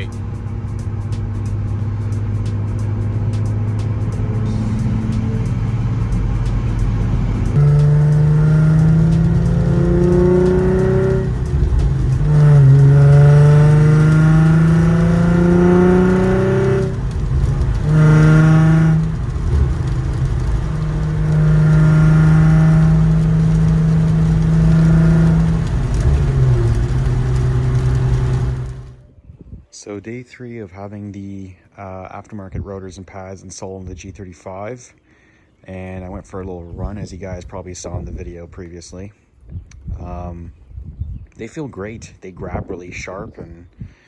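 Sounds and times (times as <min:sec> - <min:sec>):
car engine accelerating: 0:00.0 - 0:29.1.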